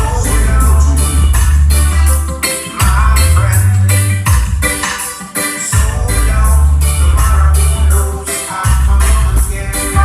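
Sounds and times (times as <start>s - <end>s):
reggae music with keyboard and drums: 0.0s - 10.0s.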